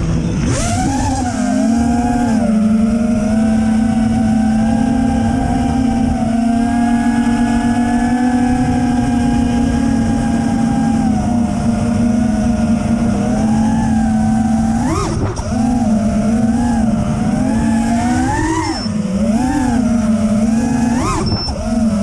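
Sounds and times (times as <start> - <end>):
drone motors whining: 0.0 - 22.0
wind noise: 0.0 - 22.0.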